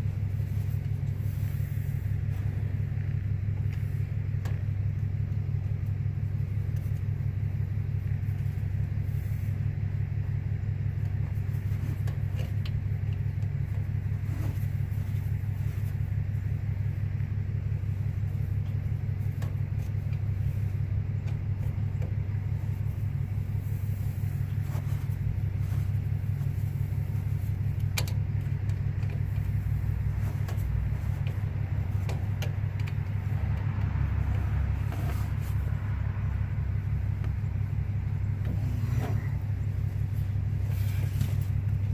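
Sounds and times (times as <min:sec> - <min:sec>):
diesel engine idling: 0:00.0 - 0:41.9
light clicks and taps: 0:30.4 - 0:35.1.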